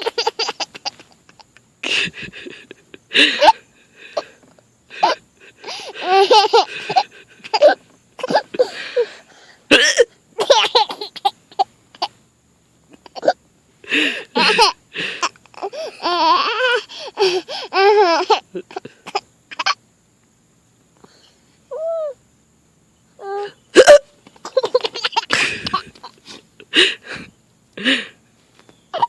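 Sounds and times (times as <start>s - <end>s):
baby giggling: 0.0s - 2.8s, 5.0s - 8.8s, 10.4s - 12.1s, 12.9s - 13.4s, 14.4s - 19.8s, 23.8s - 26.2s
woman hiccuping: 9.7s - 10.1s, 23.2s - 24.2s.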